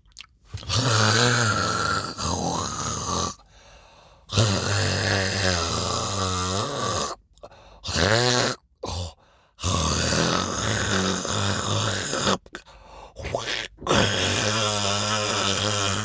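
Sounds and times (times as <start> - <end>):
person hawking up phlegm: 13.2 - 16.0.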